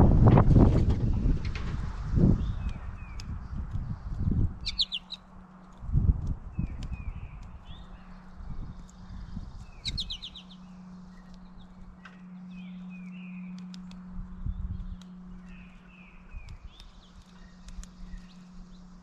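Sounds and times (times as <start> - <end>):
steady low hum: 0.0 - 19.0
small birds chirping: 2.2 - 19.0
sharp ticks: 2.4 - 12.2, 13.5 - 18.7.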